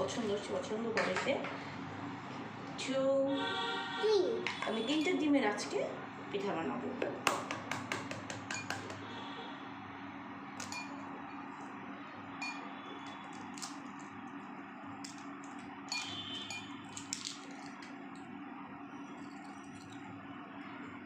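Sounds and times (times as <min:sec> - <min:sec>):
kitchenware clinking against bowl: 0:08.3 - 0:09.0, 0:10.6 - 0:11.0.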